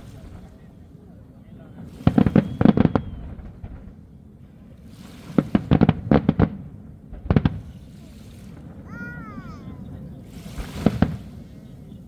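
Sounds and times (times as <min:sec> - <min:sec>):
fireworks cracking: 0:02.0 - 0:04.0, 0:05.3 - 0:07.8, 0:08.6 - 0:11.4.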